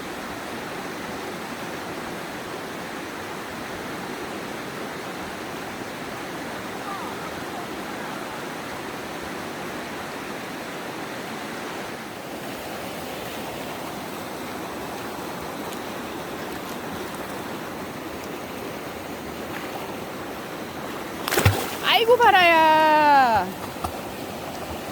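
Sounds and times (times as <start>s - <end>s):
mountain stream rushing: 0.0s - 24.9s.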